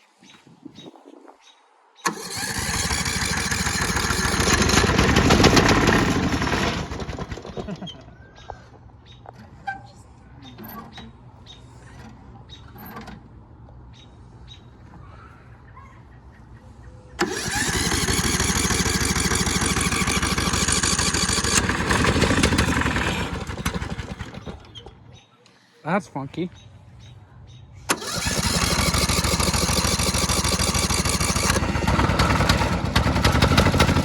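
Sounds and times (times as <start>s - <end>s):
riding lawnmower engine: 2.0s - 15.0s, 17.1s - 25.2s, 27.8s - 34.0s.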